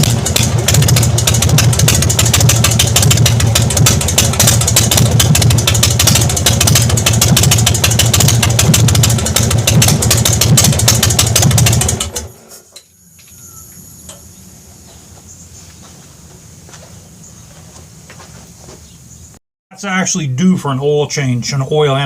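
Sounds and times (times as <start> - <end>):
motorcycle engine idling: 0.0 - 12.4.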